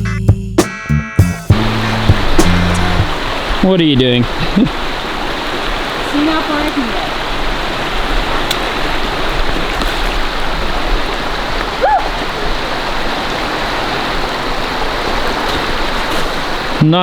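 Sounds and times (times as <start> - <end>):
rising and falling tone: 1.5 - 3.4
stream water rushing: 1.5 - 17.0.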